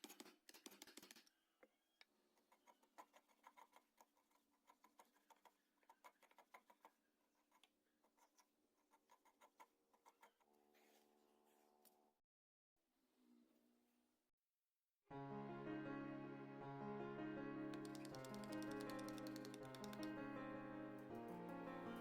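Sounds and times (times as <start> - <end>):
light ticks and taps: 17.7 - 20.2.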